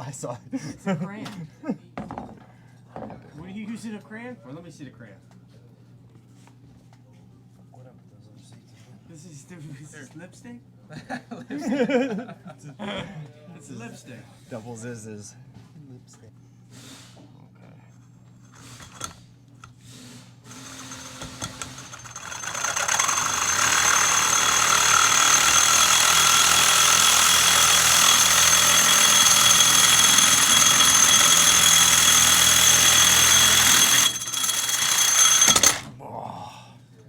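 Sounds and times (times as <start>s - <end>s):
power tool motor whining: 20.5s - 35.9s.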